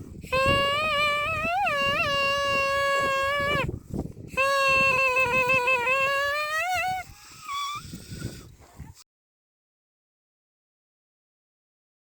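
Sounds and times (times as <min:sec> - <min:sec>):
animal wavering call: 0:04.4 - 0:07.9.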